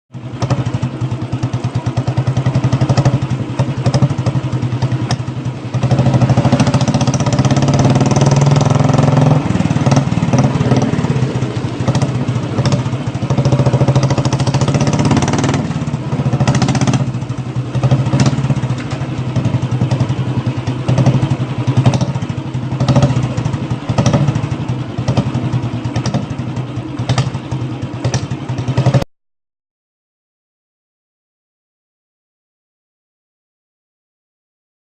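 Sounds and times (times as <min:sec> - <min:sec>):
motorcycle engine revving: 0:00.1 - 0:29.1.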